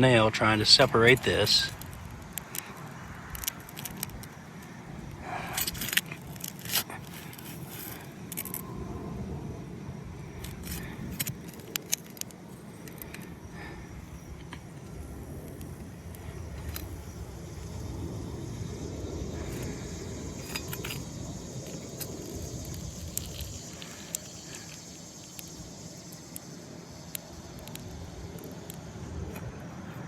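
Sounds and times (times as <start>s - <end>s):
steady low rumble: 0.0s - 30.0s
pry bar clicking and scraping shingles: 0.8s - 8.6s, 10.4s - 13.3s, 19.4s - 25.6s.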